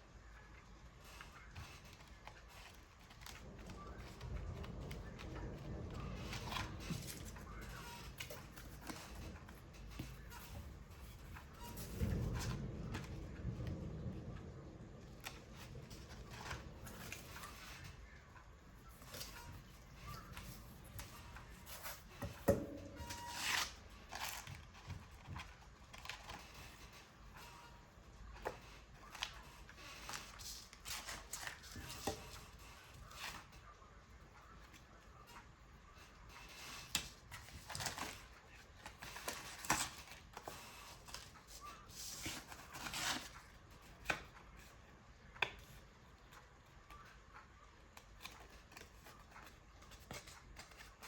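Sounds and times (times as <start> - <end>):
paper taps and rustles: 1.1 - 13.8, 18.8 - 27.5, 47.9 - 51.0.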